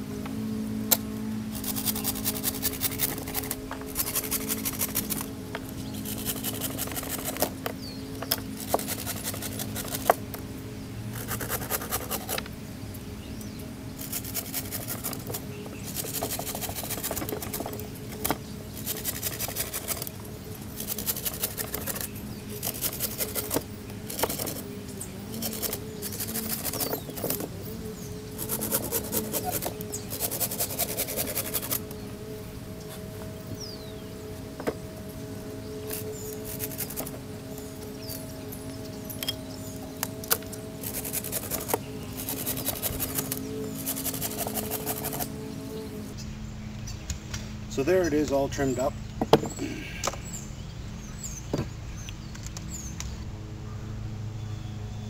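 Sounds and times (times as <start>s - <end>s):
hand saw rasping through sticks: 0.9s - 10.3s, 11.2s - 12.5s, 14.0s - 31.9s, 35.9s - 37.2s, 39.7s - 45.4s.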